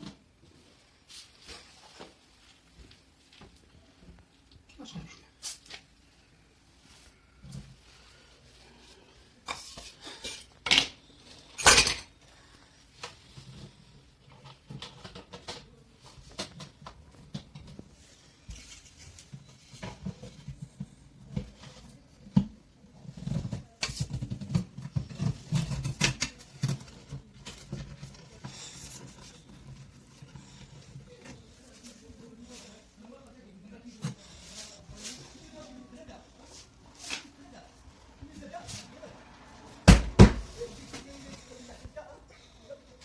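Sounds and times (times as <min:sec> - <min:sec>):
tools knocking and scraping: 0:23.2 - 0:31.5.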